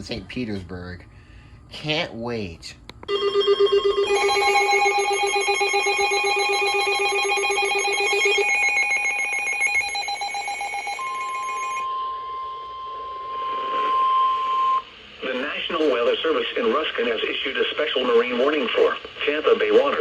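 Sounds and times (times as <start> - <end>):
steady warning alert tone: 3.2 - 14.8
weather alert radio alarms beeping: 3.4 - 14.9.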